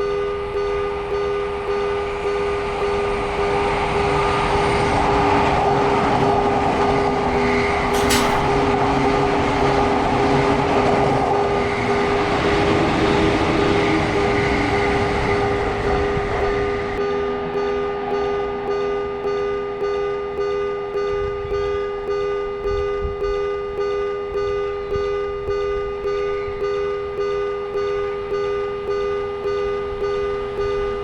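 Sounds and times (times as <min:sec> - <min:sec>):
level crossing warning bell: 0:07.8 - 0:09.7
sharp click: 0:07.9 - 0:08.8.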